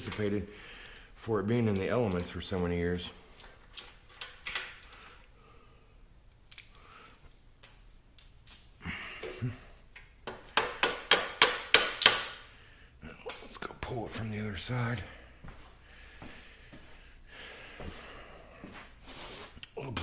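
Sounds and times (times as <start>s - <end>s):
metallic clicks and knocks: 1.6s - 2.8s.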